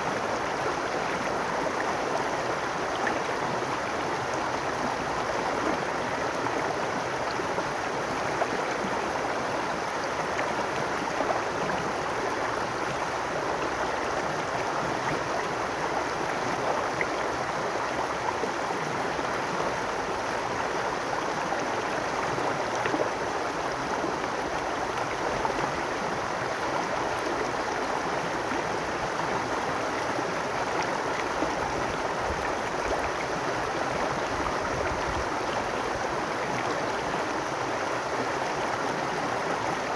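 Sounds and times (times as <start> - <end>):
brook water over stones: 0.0 - 39.9.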